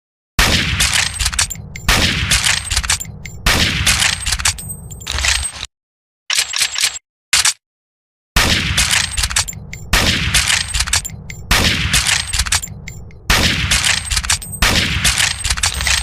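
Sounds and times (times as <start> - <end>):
rifle shots: 0.4 - 4.3, 8.4 - 12.7, 13.3 - 16.0
rifle bolt clicks: 0.8 - 4.7, 8.8 - 16.0.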